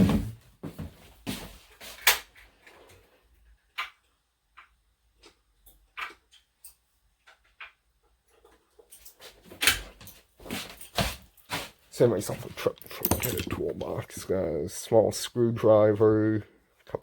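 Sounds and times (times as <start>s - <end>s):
hand tools clicking and knocking: 12.6s - 14.1s.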